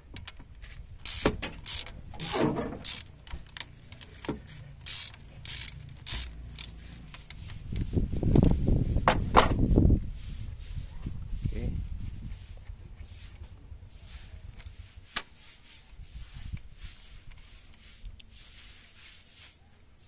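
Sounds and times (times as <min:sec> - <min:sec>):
socket ratchet wrench clicking: 0:01.0 - 0:07.6.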